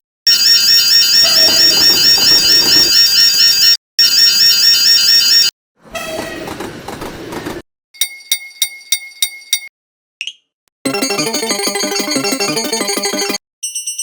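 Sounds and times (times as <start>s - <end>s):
warbling electronic crossing alarm: 0.3s - 5.5s, 10.9s - 13.4s
rushing train-like noise: 5.8s - 7.6s.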